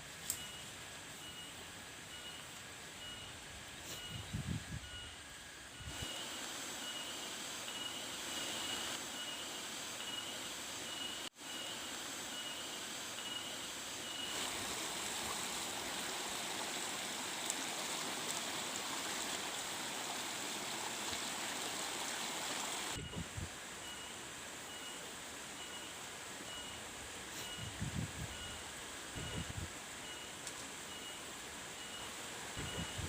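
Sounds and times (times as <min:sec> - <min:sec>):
running water: 0:14.0 - 0:23.0.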